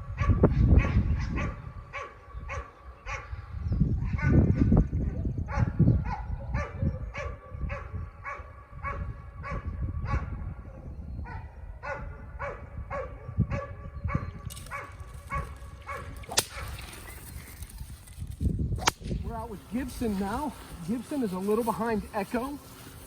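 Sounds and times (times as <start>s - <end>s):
dog barking: 0.2s - 3.3s, 4.0s - 10.4s, 11.2s - 16.8s
sharp crack: 15.9s - 17.8s, 18.8s - 20.7s
steady hiss: 19.2s - 23.0s.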